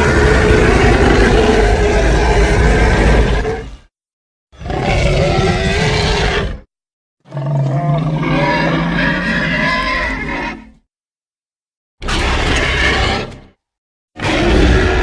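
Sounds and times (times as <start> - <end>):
dinosaur roar: 0.0 - 3.8, 4.6 - 6.7, 7.3 - 10.8, 12.0 - 13.4, 14.2 - 15.0.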